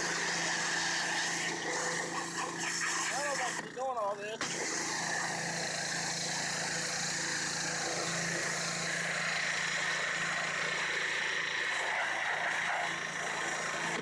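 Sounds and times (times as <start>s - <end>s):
water spray hissing: 0.0s - 3.6s
pressure washer motor drone: 0.0s - 14.0s.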